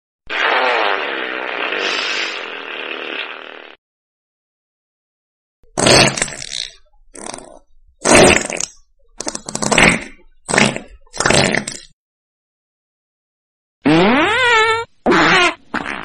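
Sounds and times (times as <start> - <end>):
fart sound effects: 0.3 - 3.8, 5.8 - 11.9, 13.8 - 16.0.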